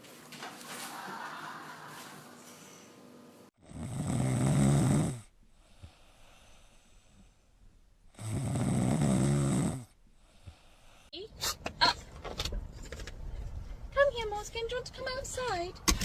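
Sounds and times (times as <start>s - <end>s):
pet snoring loudly: 3.6s - 6.9s, 8.1s - 10.9s.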